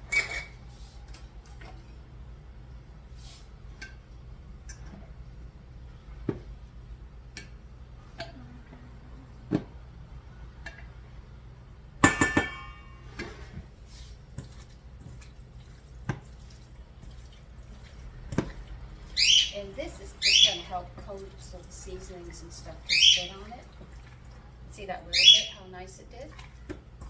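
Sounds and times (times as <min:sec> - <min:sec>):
utensils and dishes tapping: 0:12.0 - 0:12.8
ringing dish clatter: 0:12.0 - 0:13.1.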